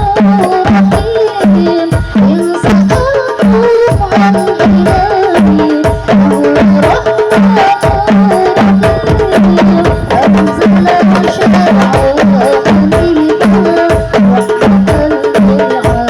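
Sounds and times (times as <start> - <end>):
frame drums: 0.0 - 16.0
deep bass drum beat: 5.8 - 16.0
wavering melody: 6.8 - 13.9.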